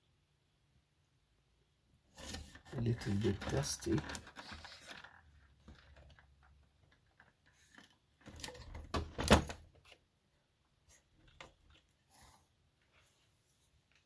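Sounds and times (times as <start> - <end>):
handling clicks and rustles: 2.2 - 10.1.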